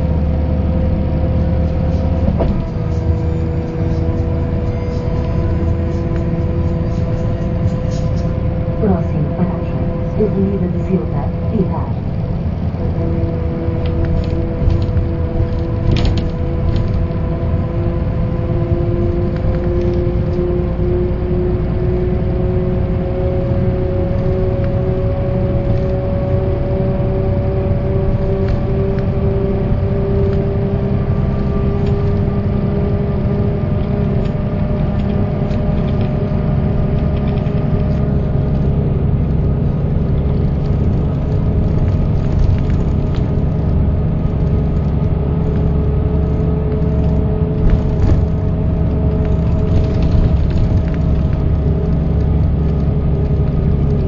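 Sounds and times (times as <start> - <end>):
bus diesel engine rumble: 0.0 - 54.0
rattles: 40.0 - 54.0.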